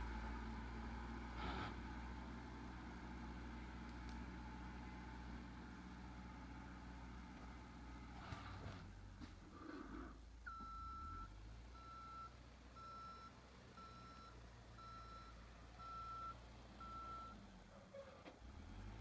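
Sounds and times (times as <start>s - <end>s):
low engine rumble: 0.0s - 19.0s
reversing alarm beeping: 10.5s - 17.4s.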